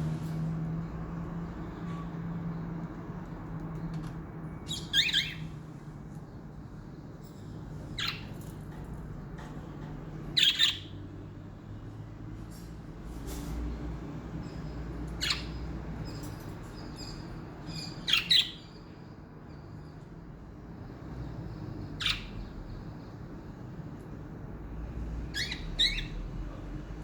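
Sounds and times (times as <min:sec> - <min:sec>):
soft bird chatter: 0:01.2 - 0:27.0
budgerigar chirps: 0:04.7 - 0:05.4, 0:22.0 - 0:22.4, 0:25.4 - 0:26.2.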